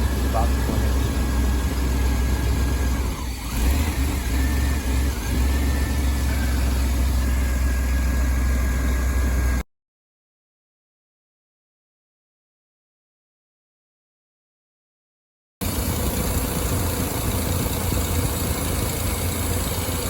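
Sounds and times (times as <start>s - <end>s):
van engine cranking: 0.0s - 9.6s.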